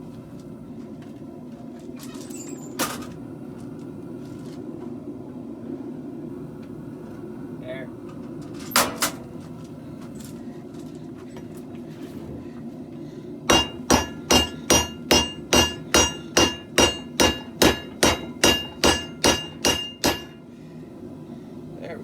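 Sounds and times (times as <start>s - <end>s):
hammer striking steel on anvil: 13.5s - 20.4s.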